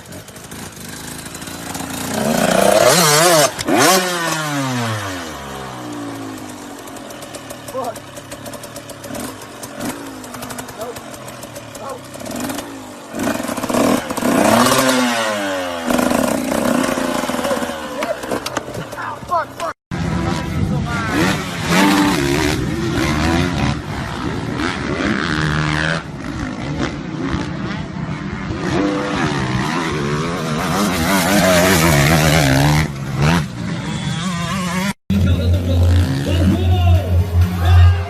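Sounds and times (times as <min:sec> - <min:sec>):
motorcycle engine revving: 0:00.0 - 0:38.0
engine running with rapid beat: 0:05.3 - 0:15.0.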